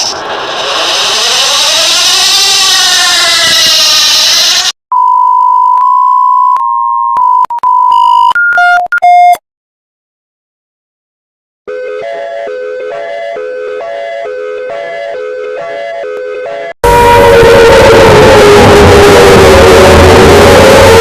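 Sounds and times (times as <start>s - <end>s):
emergency alert siren wailing: 11.7s - 21.0s.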